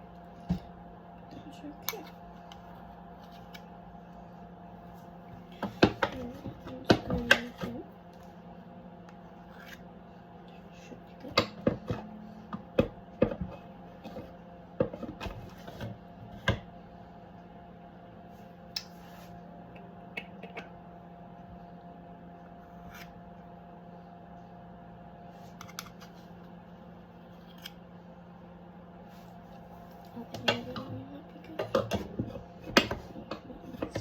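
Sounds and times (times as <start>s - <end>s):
appliance hum: 0.0s - 34.0s
baking things clicking and knocking: 30.2s - 34.0s.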